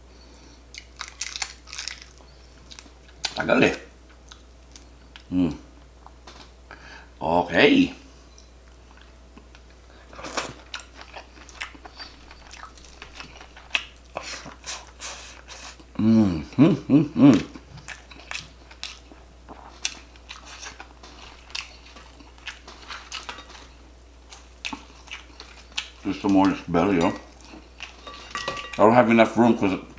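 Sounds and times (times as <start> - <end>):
chewing and biting food: 0.7 - 3.4, 8.9 - 15.9, 17.5 - 28.3
person speaking: 3.4 - 3.9, 26.0 - 27.3, 28.8 - 29.9.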